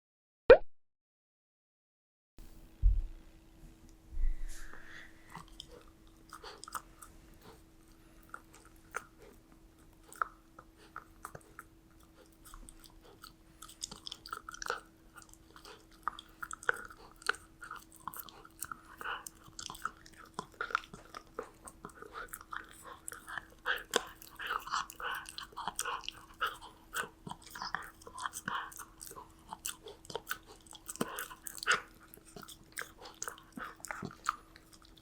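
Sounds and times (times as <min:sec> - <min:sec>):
low thump: 0:02.4 - 0:03.2, 0:04.1 - 0:04.6
puppy crunching a treat: 0:05.3 - 0:35.0.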